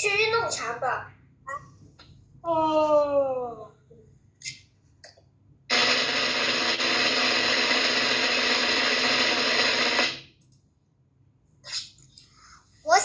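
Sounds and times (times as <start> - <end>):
machine-like buzzing whir: 5.7 - 10.3.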